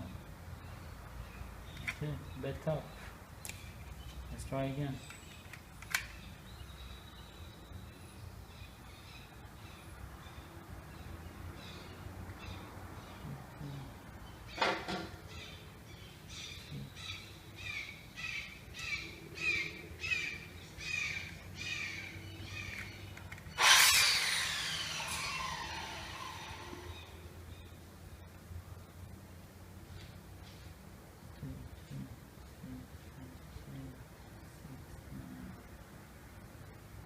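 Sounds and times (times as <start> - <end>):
low steady hum: 0.0 - 37.0
bird calling: 11.6 - 27.6
loud falling sweep: 23.6 - 27.1.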